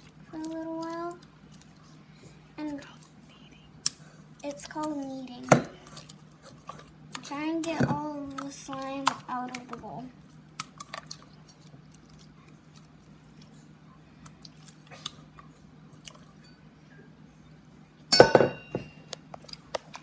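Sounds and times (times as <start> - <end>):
bowl clattering: 18.1 - 19.1.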